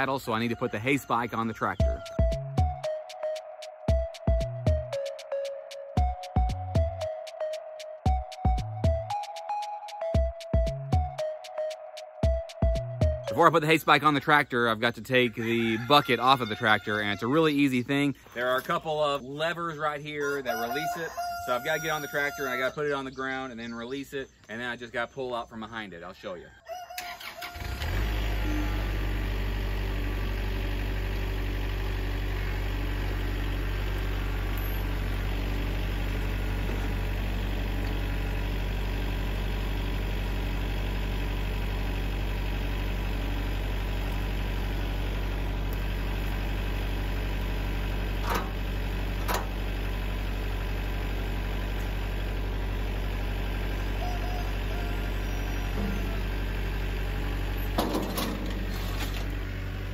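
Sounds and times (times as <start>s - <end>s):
diesel tractor engine idling: 0.0s - 2.8s, 27.0s - 59.9s.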